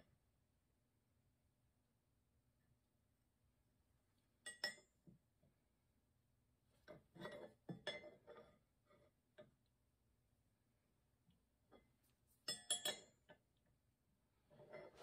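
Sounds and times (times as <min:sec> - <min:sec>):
metal tool clinking: 0:12.4 - 0:13.4.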